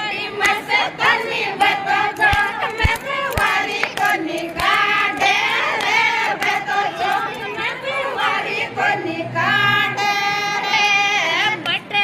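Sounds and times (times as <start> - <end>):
women singing folk song: 0.0 - 12.0
hand claps: 0.4 - 0.6, 2.1 - 7.4.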